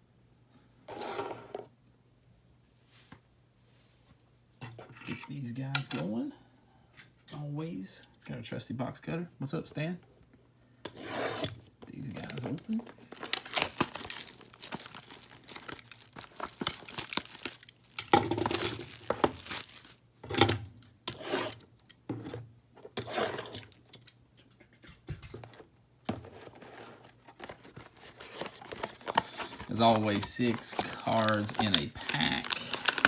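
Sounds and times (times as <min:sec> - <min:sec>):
wrapping crinkling: 0:12.0 - 0:20.0, 0:26.6 - 0:33.0
cardboard tearing: 0:13.0 - 0:20.0, 0:27.3 - 0:33.0.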